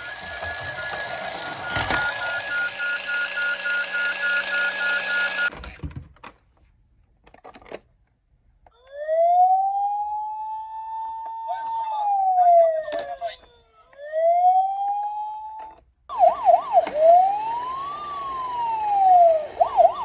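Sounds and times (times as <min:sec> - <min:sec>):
toy siren wailing: 0:00.0 - 0:05.5, 0:08.8 - 0:20.0
toy car mechanical whirr: 0:00.0 - 0:05.8, 0:15.5 - 0:20.0.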